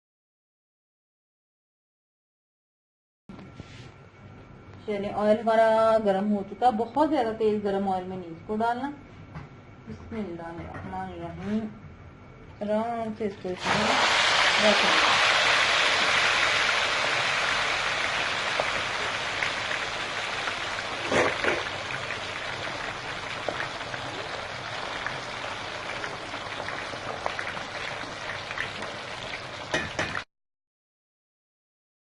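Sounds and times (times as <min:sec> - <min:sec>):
chicken deep-frying in oil: 0:13.6 - 0:30.3.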